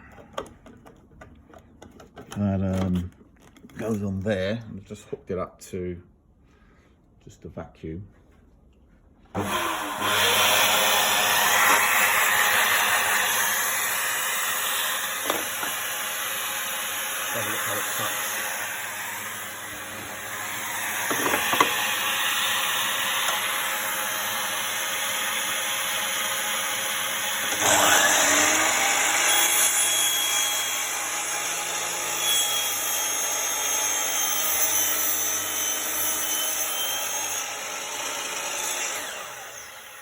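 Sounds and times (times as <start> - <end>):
mitre saw cutting wood: 9.3 - 40.0.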